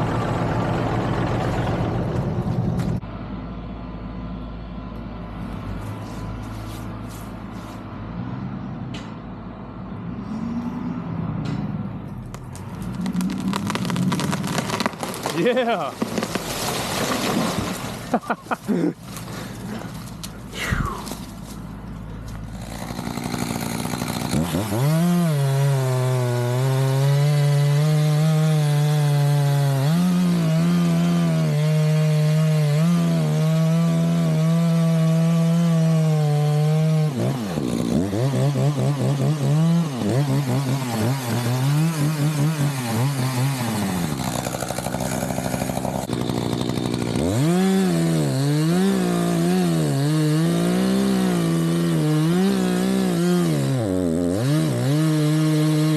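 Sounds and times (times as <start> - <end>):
two-stroke chainsaw engine revving: 13.0 - 17.1, 22.4 - 55.9.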